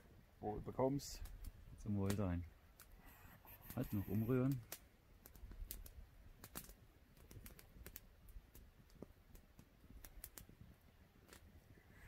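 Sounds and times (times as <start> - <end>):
campfire crackling and popping: 0.1 - 12.0.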